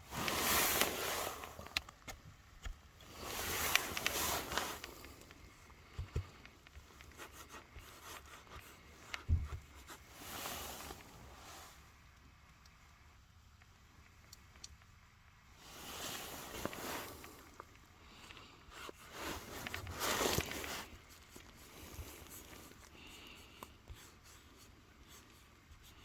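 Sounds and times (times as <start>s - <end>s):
rustling and scraping: 0.0s - 11.9s, 15.6s - 26.0s
soft low thumps: 9.2s - 9.8s.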